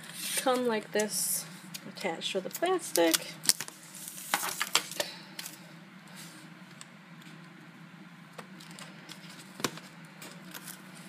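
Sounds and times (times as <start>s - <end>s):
handling paper pages and plastic: 1.7s - 5.6s, 8.4s - 11.0s.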